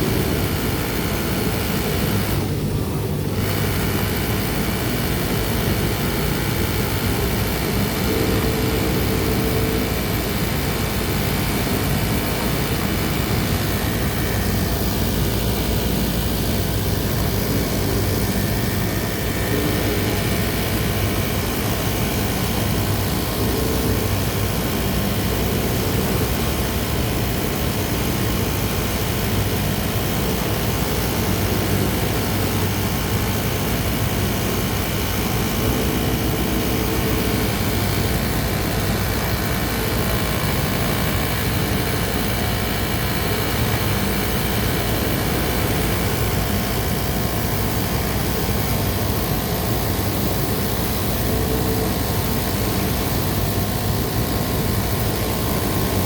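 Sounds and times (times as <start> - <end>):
sewing machine running: 0.0 - 56.0.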